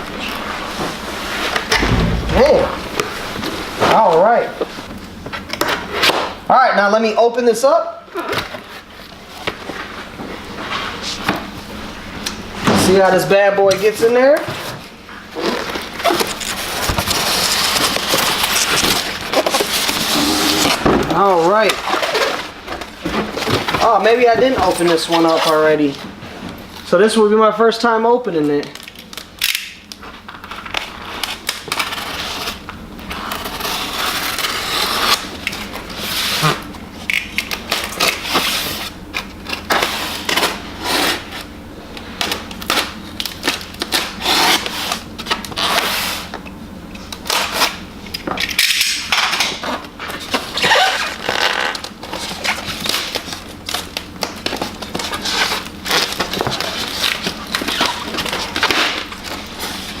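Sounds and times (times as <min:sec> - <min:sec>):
packaging scraping and rustling: 0:13.8 - 0:26.8, 0:30.0 - 0:46.4, 0:48.6 - 1:00.0.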